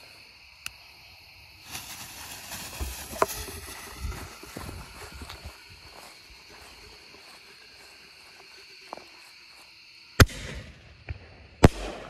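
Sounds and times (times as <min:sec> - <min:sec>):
firework shell bursting: 0:01.6 - 0:04.3.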